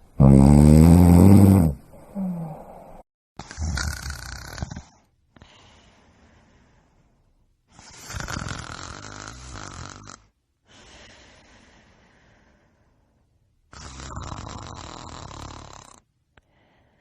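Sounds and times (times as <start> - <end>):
person snoring: 0.2 - 5.5, 7.7 - 11.2, 13.7 - 16.0
quiet breathing: 1.8 - 3.1, 4.4 - 8.3, 10.2 - 13.7, 15.9 - 17.0.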